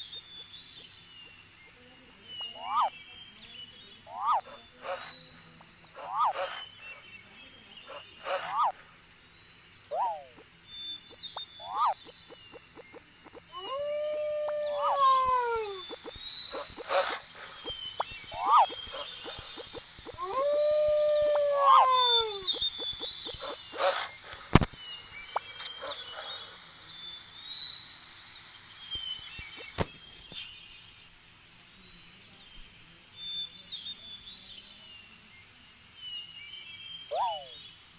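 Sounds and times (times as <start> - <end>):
birds chirping: 0.0 - 30.9, 36.8 - 37.9
steady high hiss: 0.0 - 37.9
animal yelping: 2.6 - 2.9, 4.1 - 5.1, 6.0 - 6.6, 7.9 - 8.8, 9.9 - 10.4, 11.6 - 12.1, 13.3 - 17.7, 18.3 - 24.1
howl-like animal call: 13.5 - 16.0, 20.1 - 22.6.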